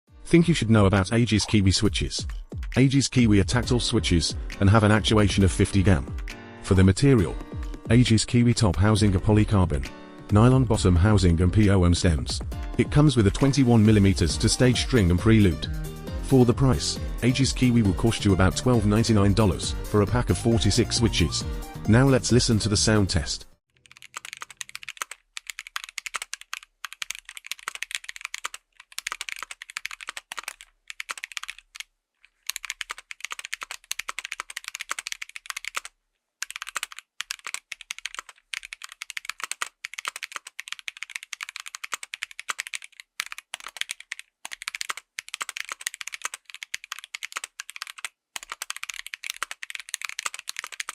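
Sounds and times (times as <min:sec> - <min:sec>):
mechanical keyboard key clacks: 0:32.5 - 0:50.9.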